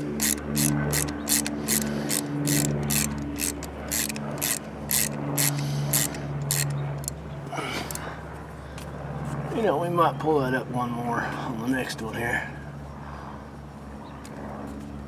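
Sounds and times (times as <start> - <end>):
ratchet wrench clicking: 0.0 - 7.2
low hum: 0.0 - 9.6.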